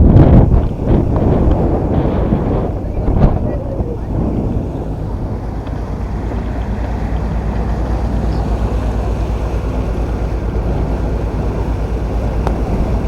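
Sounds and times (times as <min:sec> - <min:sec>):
boat engine rumble: 0:00.0 - 0:13.0
wind buffeting microphone: 0:00.0 - 0:13.0.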